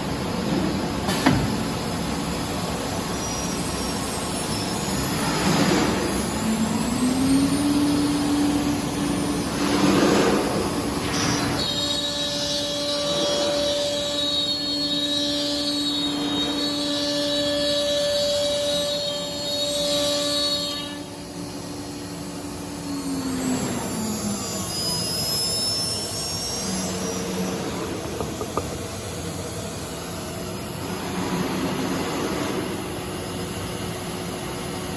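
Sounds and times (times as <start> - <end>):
machine noise: 0.0 - 34.9
router spindle whine: 1.8 - 34.9.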